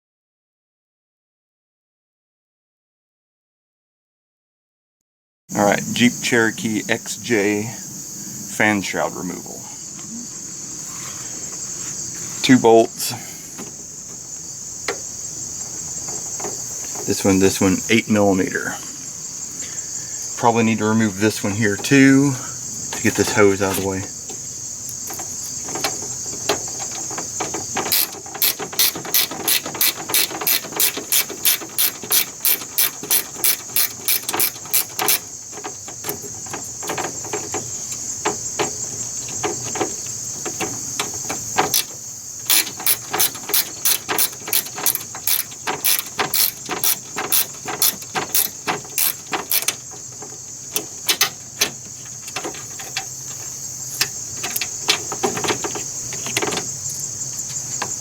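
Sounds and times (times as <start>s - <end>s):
socket ratchet clicking: 23.0s - 58.0s.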